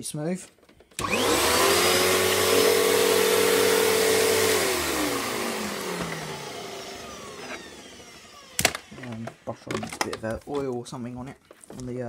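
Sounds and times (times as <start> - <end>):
vacuum cleaner motor winding down: 1.0 - 10.3.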